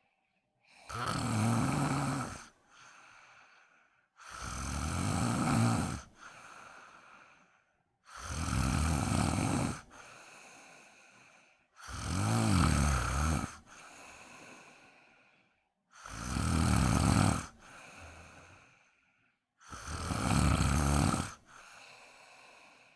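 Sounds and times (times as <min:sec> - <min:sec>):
person snoring loudly: 0:00.7 - 0:03.0, 0:04.2 - 0:07.2, 0:08.1 - 0:10.1, 0:11.8 - 0:14.9, 0:16.0 - 0:18.6, 0:19.6 - 0:22.8.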